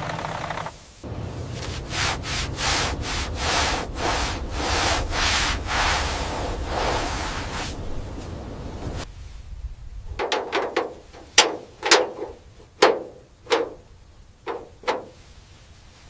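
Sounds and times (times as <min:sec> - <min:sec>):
sanding-like rubbing noise: 0:01.1 - 0:09.1.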